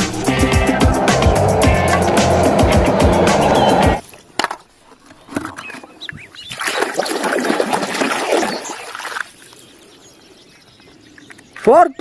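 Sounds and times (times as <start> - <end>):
background music: 0.0 - 4.0
water splashing and sloshing: 4.0 - 10.0.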